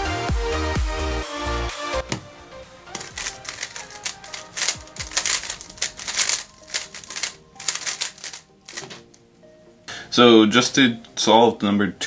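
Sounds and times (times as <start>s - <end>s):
soft background music: 1.8s - 12.0s
plastic cube clacking: 3.0s - 9.2s.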